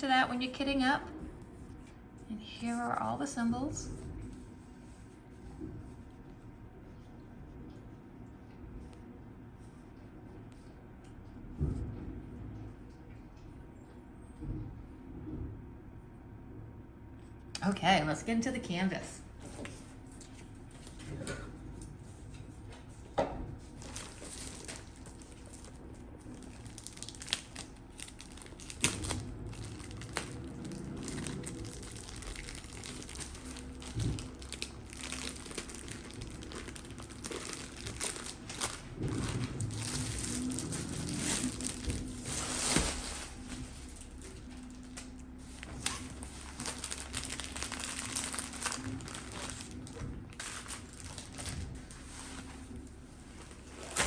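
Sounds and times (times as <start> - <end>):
packaging crinkling and rustling: 23.6 - 54.0.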